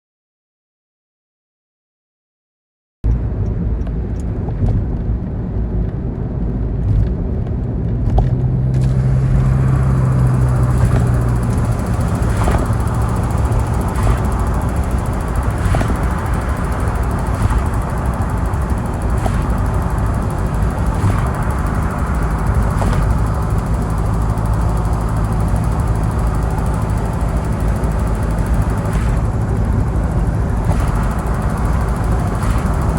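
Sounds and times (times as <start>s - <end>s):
car engine rumbling: 3.1s - 32.9s
faint ticking: 8.9s - 32.9s.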